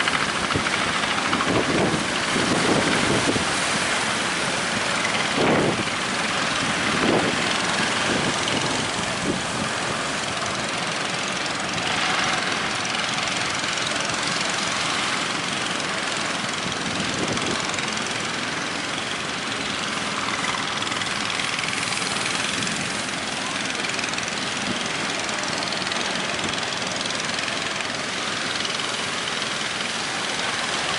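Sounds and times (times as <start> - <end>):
wind and surf rushing: 0.0 - 18.9
boat engine running: 0.0 - 30.9.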